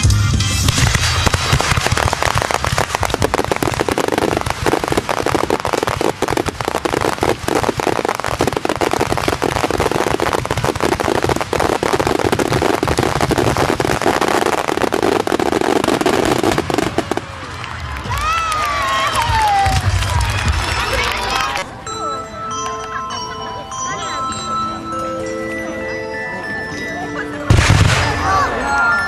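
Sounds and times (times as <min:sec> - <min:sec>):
fireworks crackling: 0:00.0 - 0:21.7, 0:27.5 - 0:29.0.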